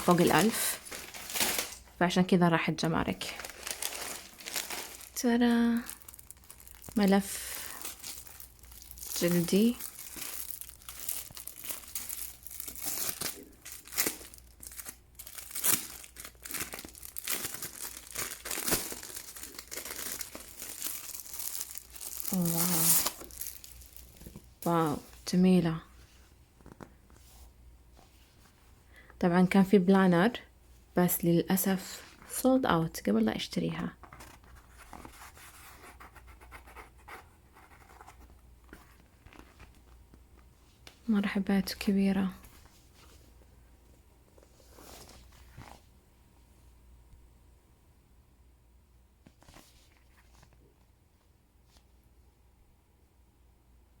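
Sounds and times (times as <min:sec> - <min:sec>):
packaging crinkling: 0:00.0 - 0:01.9, 0:03.2 - 0:24.5.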